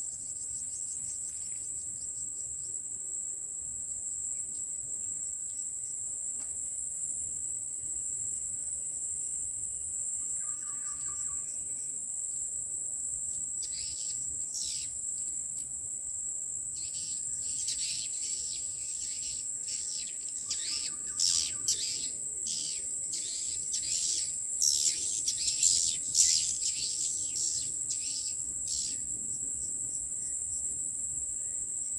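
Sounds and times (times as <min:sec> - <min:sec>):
high-pitched insect buzz: 0:13.6 - 0:15.3, 0:16.8 - 0:29.1.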